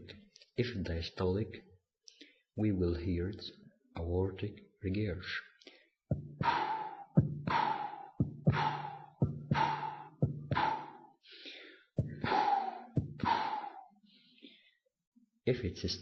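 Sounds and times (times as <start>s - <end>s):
heartbeat: 6.1s - 11.0s, 12.0s - 13.8s
high-pitched heart murmur: 6.1s - 11.0s, 12.0s - 13.8s.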